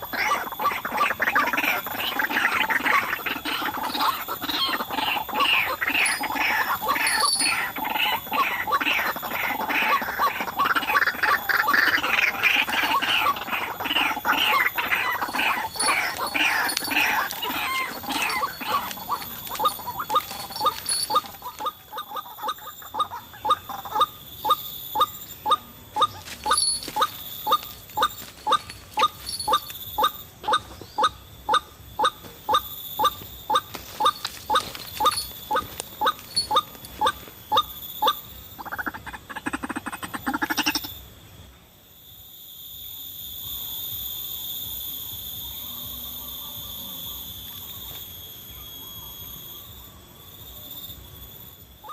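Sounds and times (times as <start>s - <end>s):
waterhen calling: 0.0s - 40.9s
steady insect drone: 0.0s - 51.9s.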